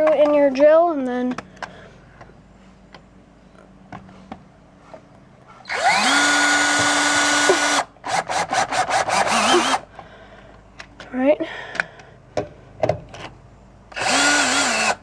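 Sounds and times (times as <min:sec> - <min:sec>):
power drill driving a screw: 0:05.7 - 0:09.8, 0:13.9 - 0:15.0.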